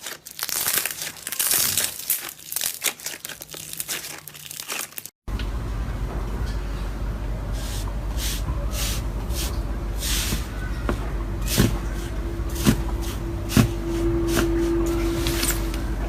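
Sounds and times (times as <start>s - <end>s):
slime squelching: 0.0s - 5.1s
steady low hum: 5.3s - 16.0s.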